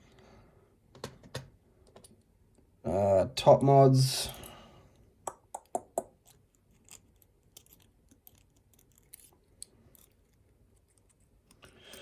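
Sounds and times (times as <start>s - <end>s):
lock parts clicking and tapping: 5.6s - 12.0s.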